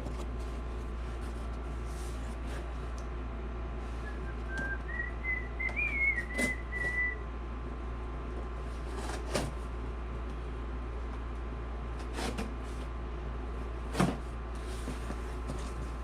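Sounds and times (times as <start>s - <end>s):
steady low hum: 0.0s - 16.0s
person whistling a tune: 4.0s - 7.3s.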